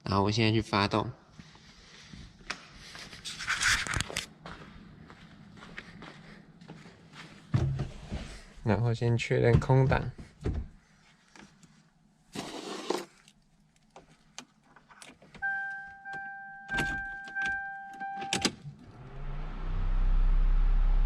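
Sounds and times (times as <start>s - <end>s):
car engine starting and idling: 15.4s - 21.0s.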